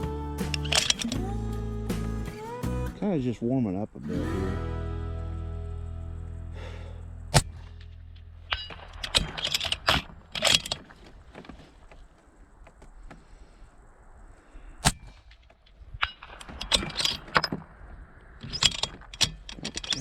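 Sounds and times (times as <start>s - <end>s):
rifle bolt clacking: 0.6s - 1.2s, 8.5s - 11.0s, 16.0s - 17.6s, 18.4s - 20.0s
suppressed rifle shot: 7.3s - 7.9s.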